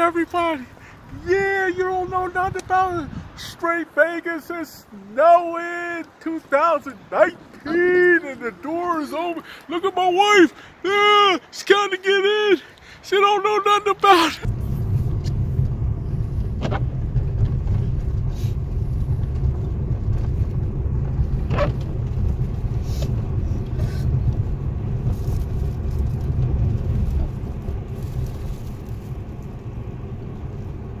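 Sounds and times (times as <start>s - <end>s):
wind buffeting microphone: 0.0s - 3.8s, 14.4s - 31.0s.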